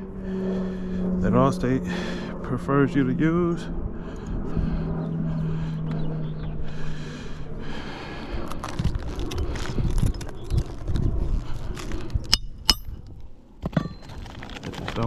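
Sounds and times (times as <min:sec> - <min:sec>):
scraping on shingle roof: 0:13.6 - 0:15.0.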